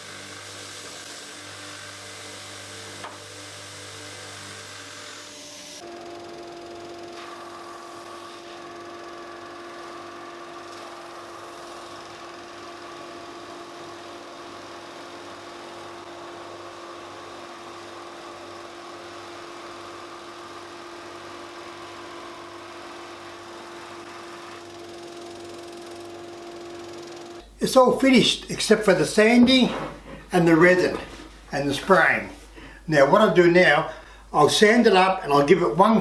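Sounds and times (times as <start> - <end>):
power tool motor whine: 0.0 - 27.4.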